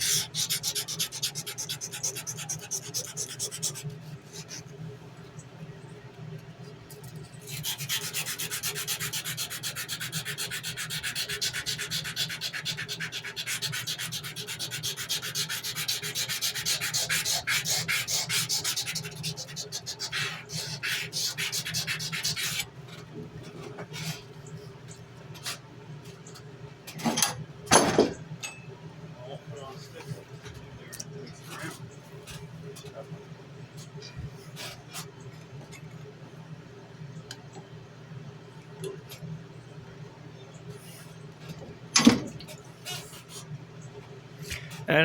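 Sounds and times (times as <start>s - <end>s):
sandpaper rubbing on knife blade: 0.0s - 4.6s, 7.2s - 22.7s.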